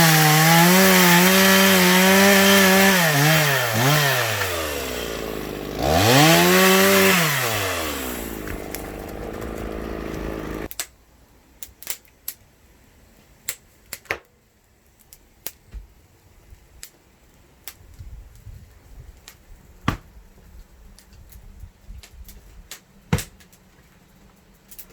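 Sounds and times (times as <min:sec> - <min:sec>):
chainsaw engine revving: 0:00.0 - 0:10.7.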